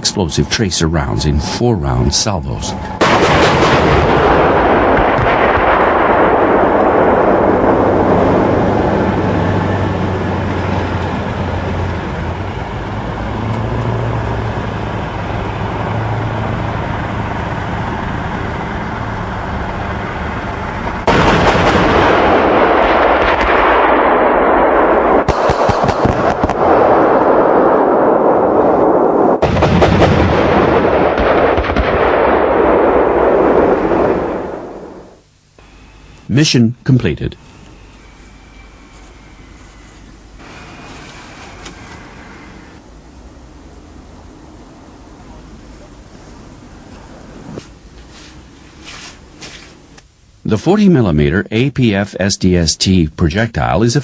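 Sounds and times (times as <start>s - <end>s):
cannon firing salvos: 2.8s - 13.5s, 20.0s - 35.8s
tracked vehicle engine running: 7.8s - 21.6s.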